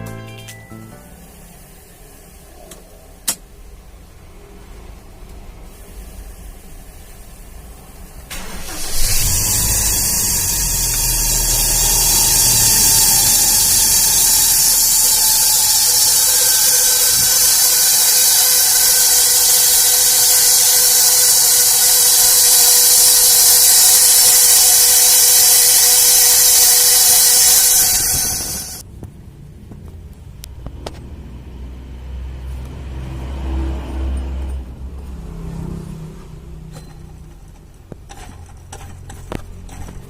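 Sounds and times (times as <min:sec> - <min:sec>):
belt pulley whine and hiss: 0:01.2 - 0:28.8
engine starting: 0:08.3 - 0:28.8.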